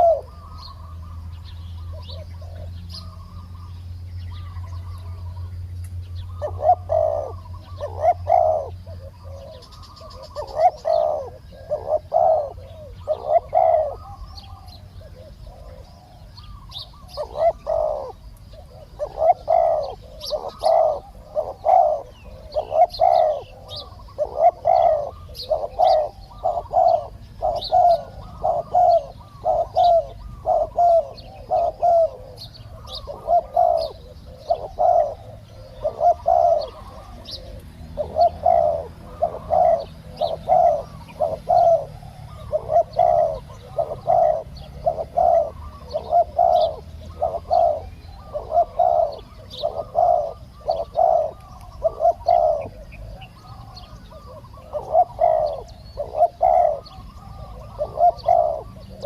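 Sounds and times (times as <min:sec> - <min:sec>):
doves cooing: 0:00.0 - 0:59.0
small birds chirping: 0:00.0 - 0:59.0.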